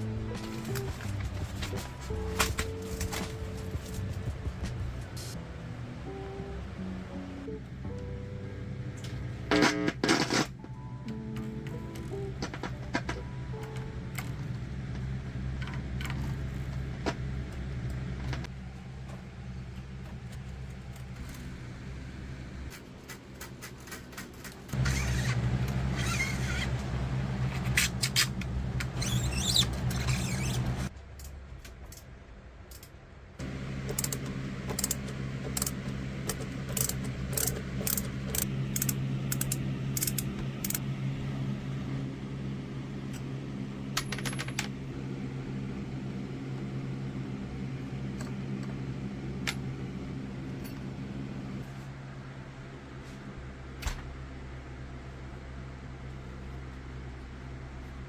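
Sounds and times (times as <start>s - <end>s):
electric motor hum: 24.7s - 30.9s.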